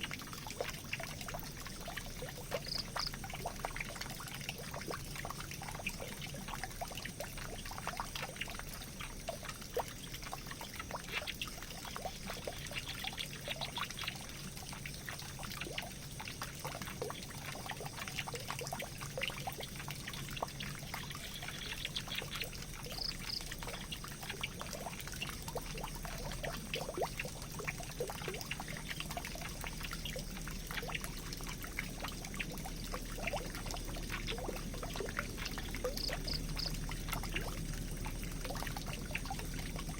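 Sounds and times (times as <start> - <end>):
water drips and splashes: 0.0 - 39.9
water pouring and trickling: 0.0 - 39.9.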